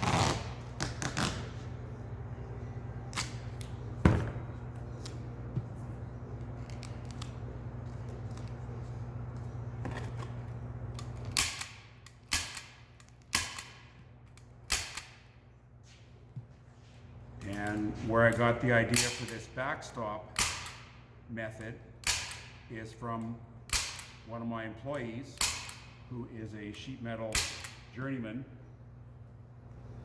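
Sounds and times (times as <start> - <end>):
low hum: 0.3 - 30.0
staple gun firing: 25.4 - 25.9.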